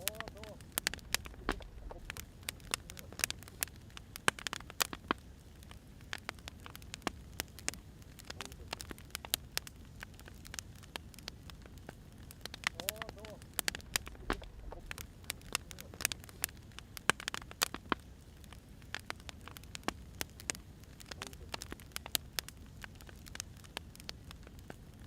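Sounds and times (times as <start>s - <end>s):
low steady rumble: 0.0s - 4.5s, 6.5s - 16.8s
firewood crackling: 0.0s - 25.0s.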